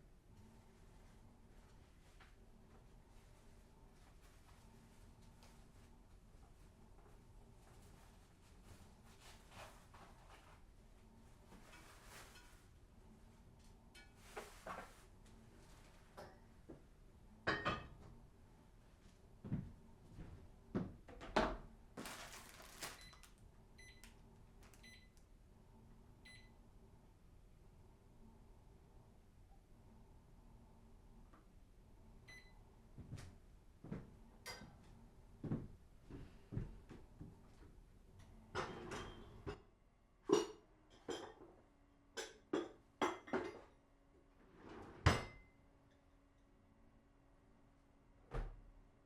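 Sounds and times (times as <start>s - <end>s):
appliance control panel beeps: 23.8s - 24.1s
dishes and utensils clinking: 40.3s - 41.4s.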